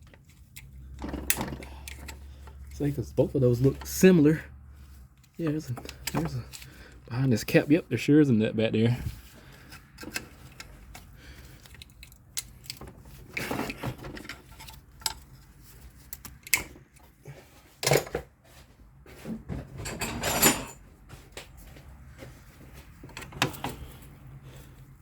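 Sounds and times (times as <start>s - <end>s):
hand tools clinking on metal: 19.9s - 20.8s.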